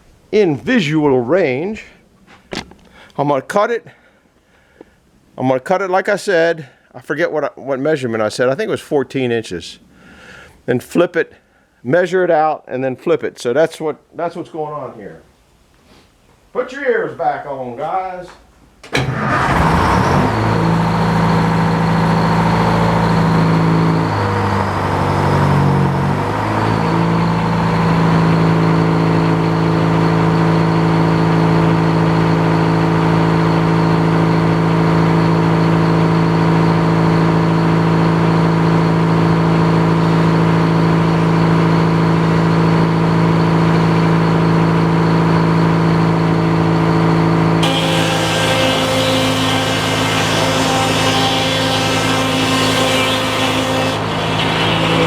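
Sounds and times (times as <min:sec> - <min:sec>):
sawmill engine running: 0:19.0 - 0:55.0.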